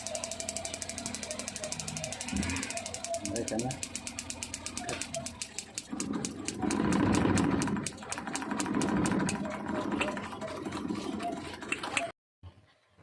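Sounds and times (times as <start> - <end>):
engine running: 0.0 - 12.1.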